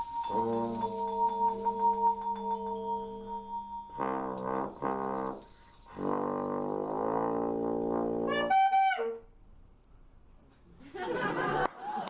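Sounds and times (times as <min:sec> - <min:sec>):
high piping note: 0:00.0 - 0:09.3
brass-like wind instrument: 0:00.0 - 0:09.4.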